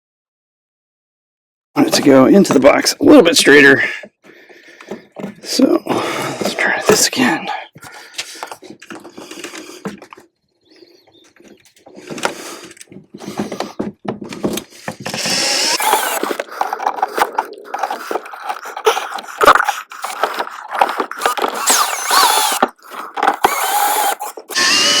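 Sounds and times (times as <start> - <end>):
scraping and knocks: 11.3 - 24.6
power drill running in bursts: 15.0 - 17.3, 19.0 - 25.0.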